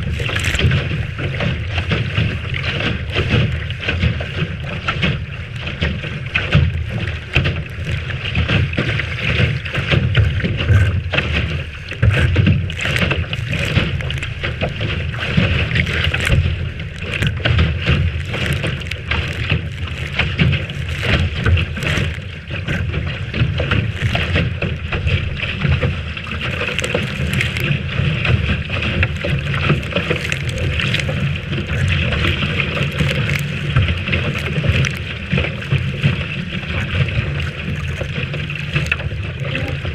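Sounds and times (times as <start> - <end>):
water slapping hull: 0.0 - 39.9
water splashing against hull: 0.0 - 39.9.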